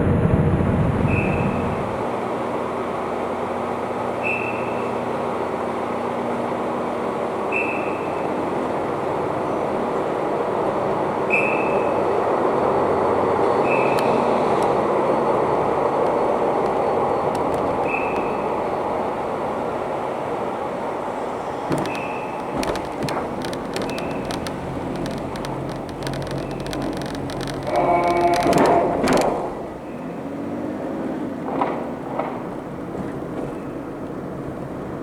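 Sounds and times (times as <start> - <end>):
car engine and road noise: 0.0 - 35.0
sharp clicks: 21.7 - 29.4.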